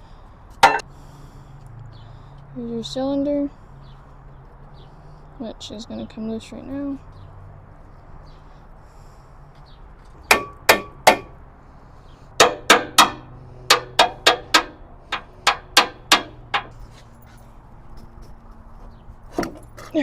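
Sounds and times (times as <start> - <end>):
hammer ringing on steel: 10.3 - 11.3, 12.4 - 14.8.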